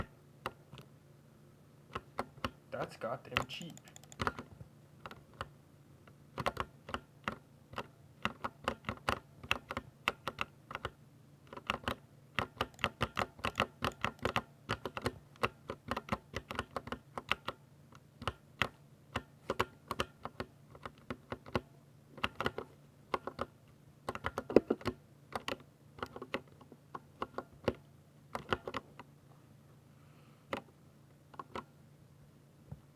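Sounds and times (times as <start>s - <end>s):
faint low hum: 0.0s - 32.9s
mechanical keyboard typing: 3.3s - 5.5s, 6.4s - 17.6s, 18.2s - 29.1s.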